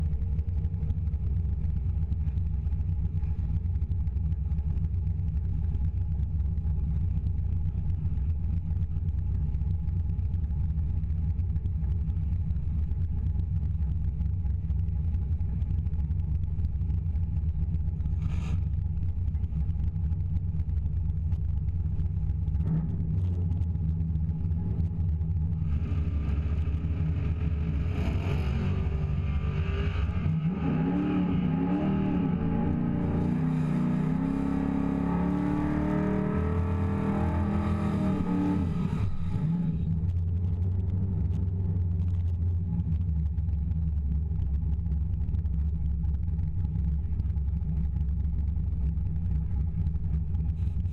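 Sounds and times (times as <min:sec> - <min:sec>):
car engines idling: 0:00.0 - 0:50.9
engine revving: 0:25.6 - 0:40.1.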